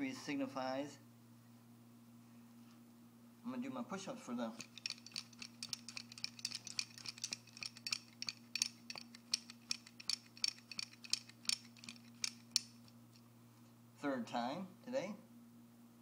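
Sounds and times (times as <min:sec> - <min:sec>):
bangle bracelets clinking: 0:04.5 - 0:13.0.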